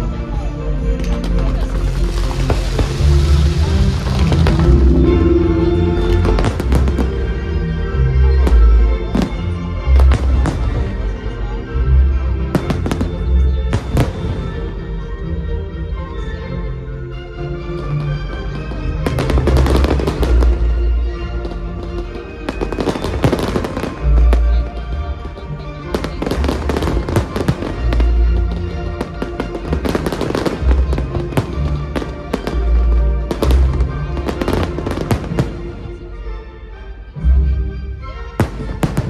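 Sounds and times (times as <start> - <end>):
music with deep bass: 0.0 - 36.3
fireworks bursting and crackling: 1.0 - 9.4, 19.1 - 20.8, 21.4 - 36.0.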